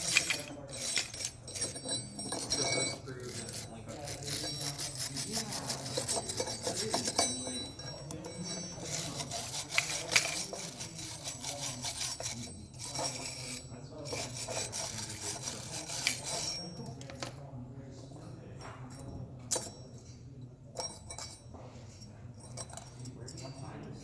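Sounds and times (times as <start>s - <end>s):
hand tool rasping on mold: 0.0s - 17.2s.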